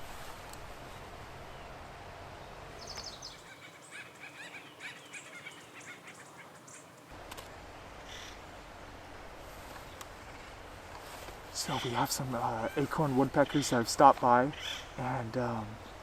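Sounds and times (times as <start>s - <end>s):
woodpeckers chattering: 2.8s - 7.1s, 11.6s - 16.0s.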